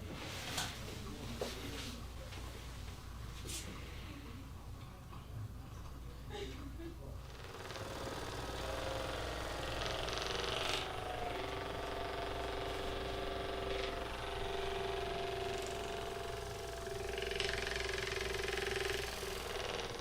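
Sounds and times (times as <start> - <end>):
electric massager buzzing: 7.2 - 20.0.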